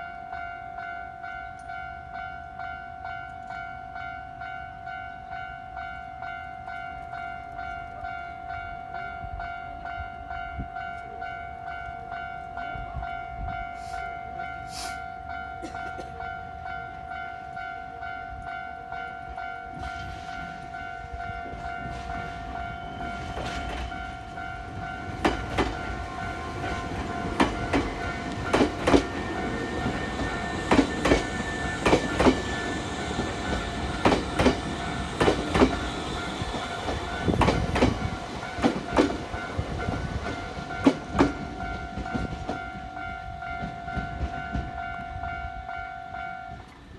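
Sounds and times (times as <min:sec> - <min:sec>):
level crossing warning bell: 0:00.0 - 0:46.9
train approaching: 0:00.0 - 0:46.9
train wheels clacking over rail joints: 0:21.5 - 0:45.0.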